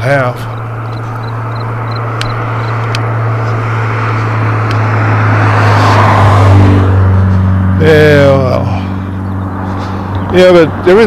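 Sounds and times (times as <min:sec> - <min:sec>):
steady low hum: 0:00.0 - 0:05.0
car passing: 0:00.0 - 0:11.0.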